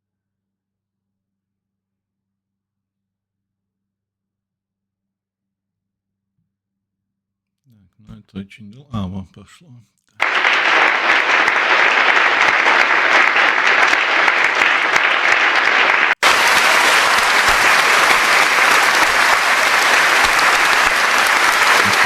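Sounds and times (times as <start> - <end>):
crowd applauding: 10.2 - 22.0.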